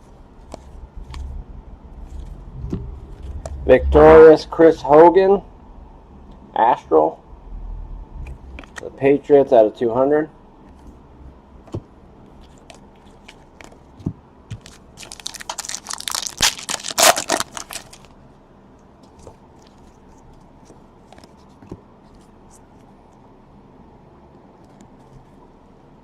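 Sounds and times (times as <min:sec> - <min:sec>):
plastic packaging crinkling and tearing: 0:14.6 - 0:18.1.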